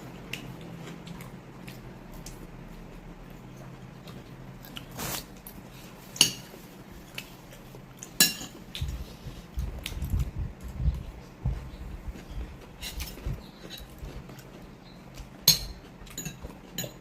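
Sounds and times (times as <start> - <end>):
cutlery clinking against dish: 6.2 - 6.6, 8.2 - 8.6, 15.4 - 17.0.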